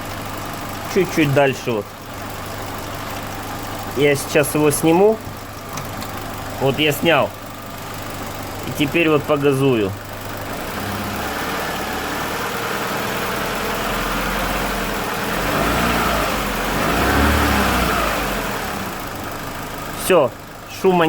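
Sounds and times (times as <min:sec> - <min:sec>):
car engine revving: 0:08.1 - 0:19.9.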